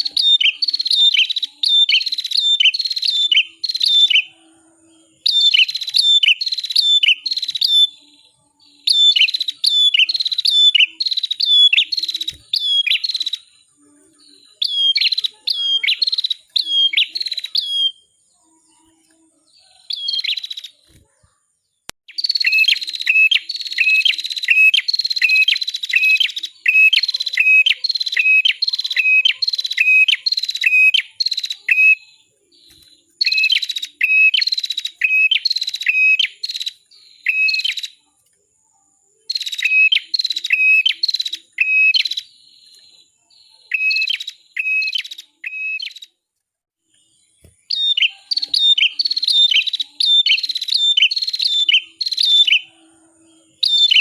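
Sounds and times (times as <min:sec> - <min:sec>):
songbird sharp chirps: 0:00.0 - 0:46.2, 0:46.8 - 0:54.0.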